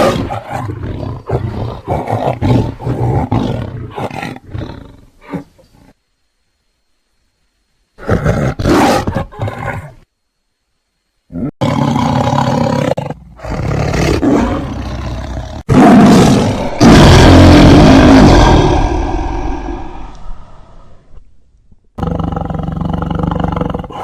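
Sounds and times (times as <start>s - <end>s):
big cat roaring and growling: 11.3s - 20.5s, 22.0s - 24.0s.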